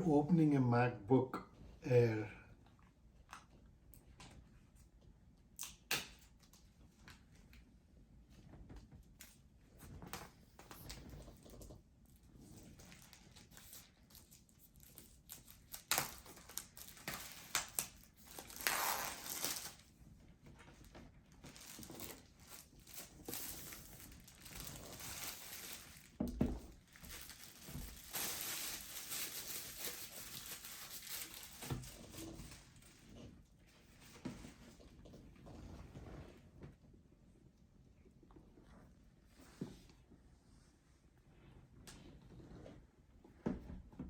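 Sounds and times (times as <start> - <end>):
plastic and paper crinkling: 12.5 - 19.9, 20.6 - 33.3.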